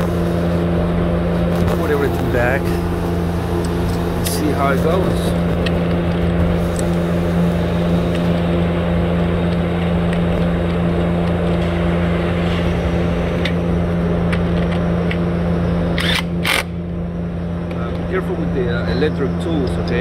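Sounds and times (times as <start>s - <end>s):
low mechanical hum: 0.0s - 20.0s
cordless power tool bursts: 16.0s - 16.8s.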